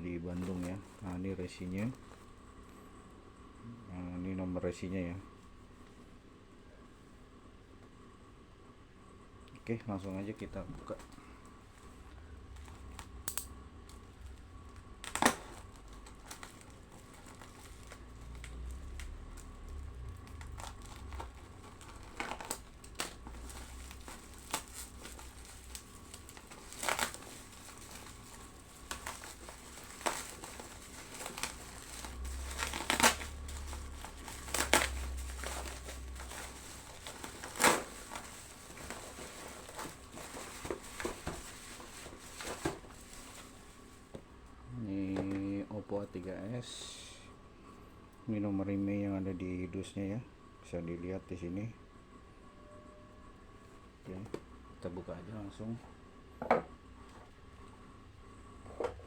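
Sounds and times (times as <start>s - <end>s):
packing material crinkling: 0.2s - 2.3s, 9.7s - 44.2s
package tearing: 12.5s - 43.5s.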